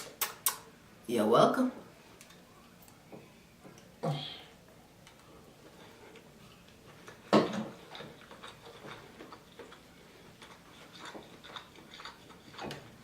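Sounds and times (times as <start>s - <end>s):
wet chewing clicks: 7.0s - 13.0s.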